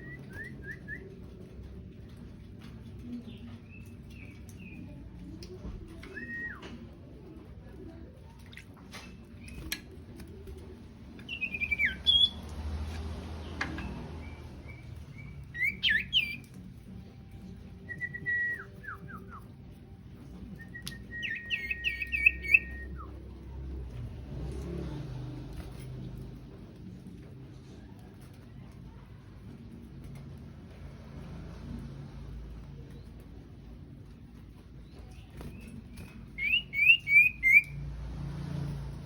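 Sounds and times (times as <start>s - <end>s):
songbird whistling: 11.3s - 12.4s, 14.2s - 16.5s, 17.8s - 19.5s, 20.6s - 23.1s, 35.6s - 37.8s.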